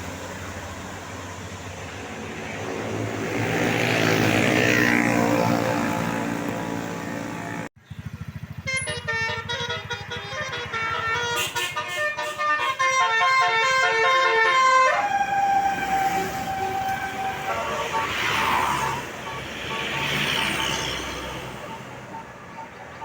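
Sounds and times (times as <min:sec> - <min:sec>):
diesel engine idling: 0:06.1 - 0:23.0
bus musical horn playing a tune: 0:08.6 - 0:23.0.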